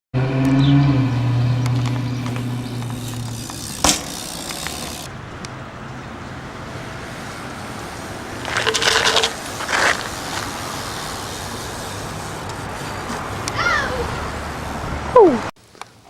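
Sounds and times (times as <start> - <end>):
low engine-like hum: 0.2 - 15.4
short clatter: 8.4 - 10.1.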